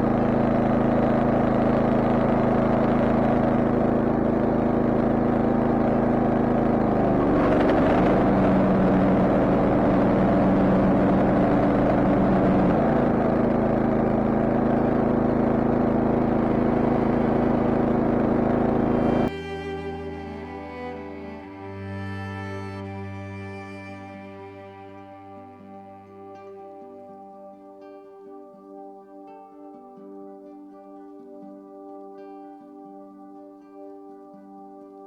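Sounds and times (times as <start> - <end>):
lawn mower engine running: 0.0 - 21.4.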